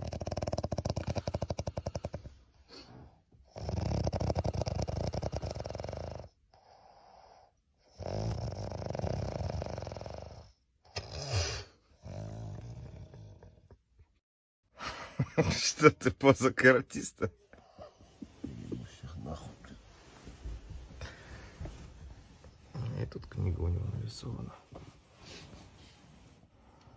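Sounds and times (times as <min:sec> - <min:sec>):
man snoring: 0:00.0 - 0:02.2, 0:03.5 - 0:06.4, 0:07.9 - 0:13.6.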